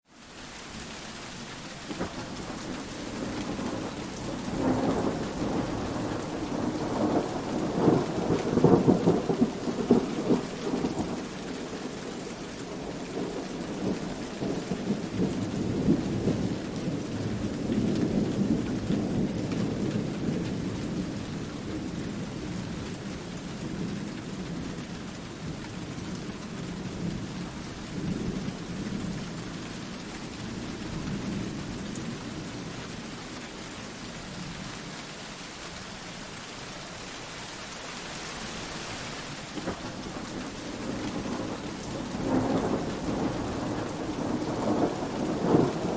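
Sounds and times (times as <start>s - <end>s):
steady rain: 0.0s - 45.9s
rolling thunder: 1.9s - 22.5s, 39.6s - 45.9s.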